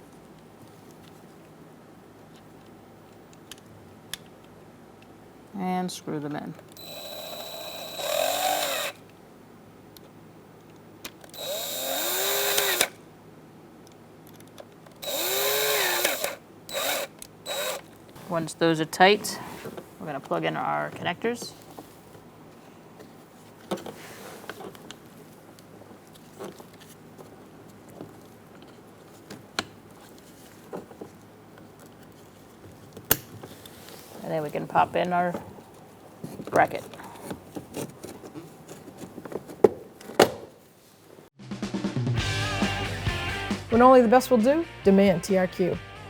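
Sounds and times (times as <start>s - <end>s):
drill driving screws: 6.8s - 9.0s, 11.4s - 13.0s, 15.0s - 17.9s
soft plastic rustles and knocks: 21.0s - 40.2s.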